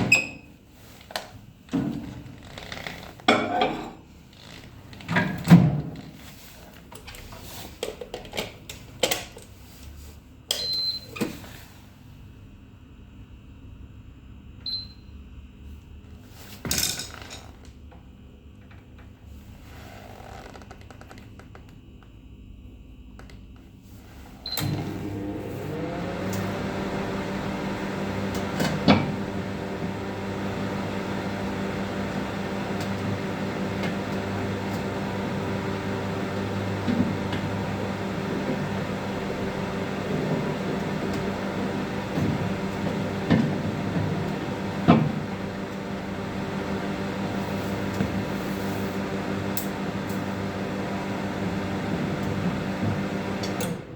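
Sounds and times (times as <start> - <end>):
microwave oven humming: 10.5 - 16.4, 21.4 - 53.9.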